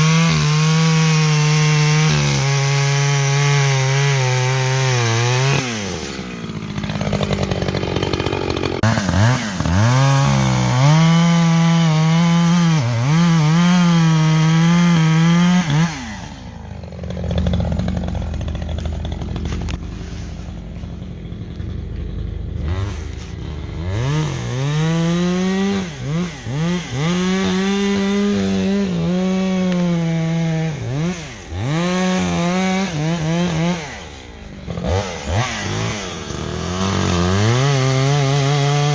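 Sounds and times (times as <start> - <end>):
chainsaw cutting wood: 0.0 - 38.9
chainsaw idling: 0.0 - 38.9.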